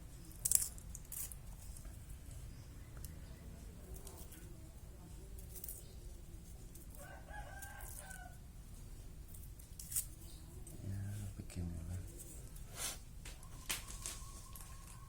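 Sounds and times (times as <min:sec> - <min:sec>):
rooster crowing: 0:06.9 - 0:08.4.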